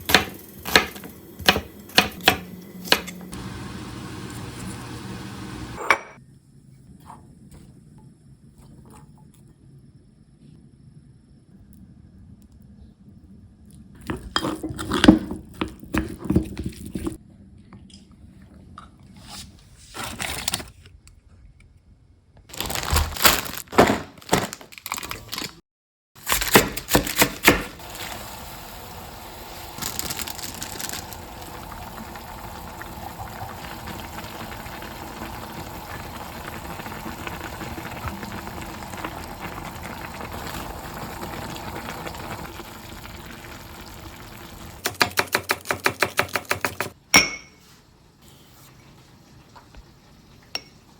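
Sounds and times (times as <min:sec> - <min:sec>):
food frying in a pan: 0:00.0 - 0:05.8, 0:26.9 - 0:47.0
crinkling: 0:22.5 - 0:25.6, 0:26.2 - 0:32.8.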